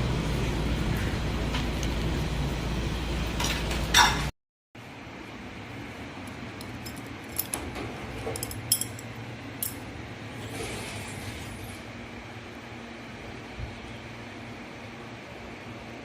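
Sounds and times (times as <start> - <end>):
eatery background hum: 0.0 - 16.0
tableware clinking: 6.8 - 9.8.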